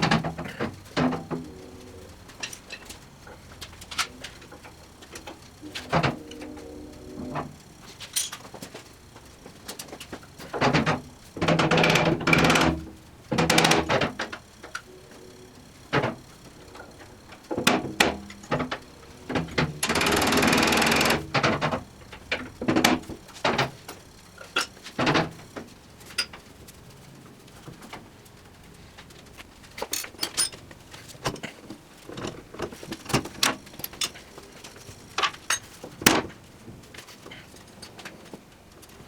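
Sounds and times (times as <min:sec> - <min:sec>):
tools knocking and clattering: 0:09.8 - 0:14.9, 0:29.8 - 0:34.3, 0:35.2 - 0:36.3.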